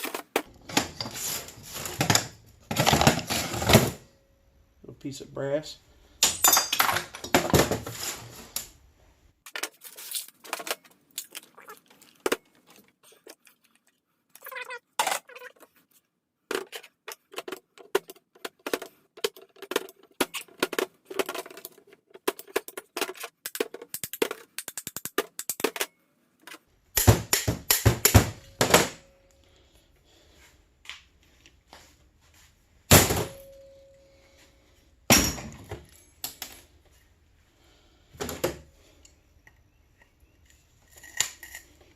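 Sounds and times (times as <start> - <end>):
metal pieces clanking: 6.2 - 8.7.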